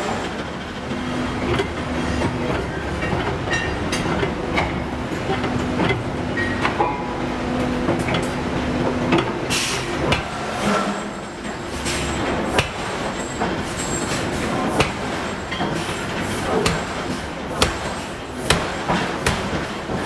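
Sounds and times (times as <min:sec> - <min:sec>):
steady machinery hum: 0:00.0 - 0:20.0
forging hammer striking steel: 0:12.5 - 0:20.0.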